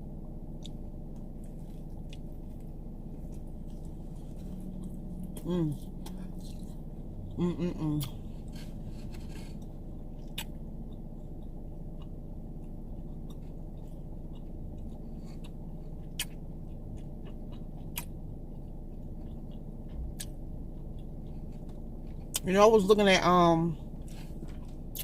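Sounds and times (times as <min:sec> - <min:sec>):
low hum inside a car: 0:00.0 - 0:25.0.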